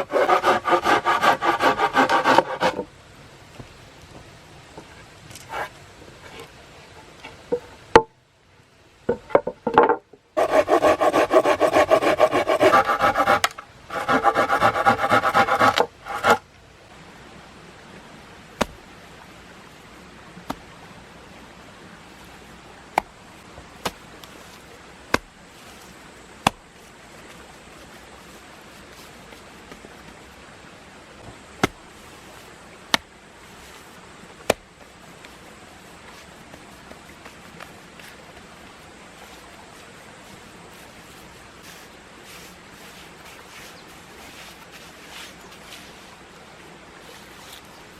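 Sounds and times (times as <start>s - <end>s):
hand tool rasping on wood: 0.0s - 2.9s, 10.4s - 16.4s.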